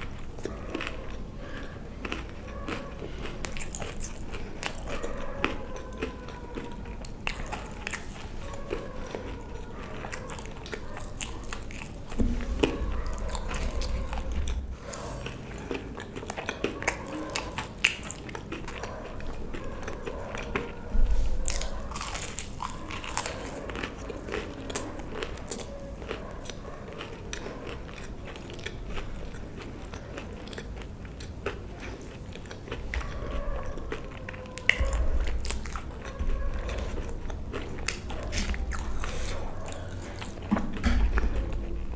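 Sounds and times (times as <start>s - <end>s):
person chewing and crunching food: 0.0s - 41.9s.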